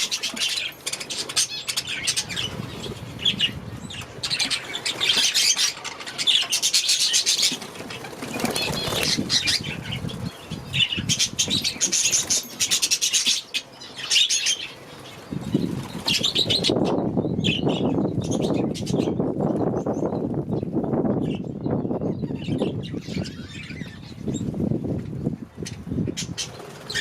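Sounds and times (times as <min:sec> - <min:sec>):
budgerigars chirping: 0:00.0 - 0:19.8
wings flapping: 0:07.2 - 0:10.3, 0:26.4 - 0:27.0.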